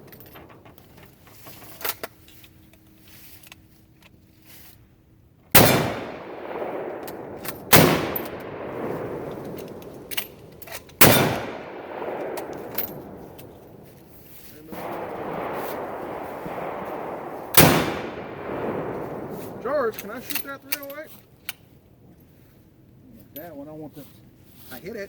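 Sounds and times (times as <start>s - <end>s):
rifle shots with rolling echo: 0.0s - 1.0s, 5.5s - 21.0s
faint sharp cracks: 5.6s - 21.7s.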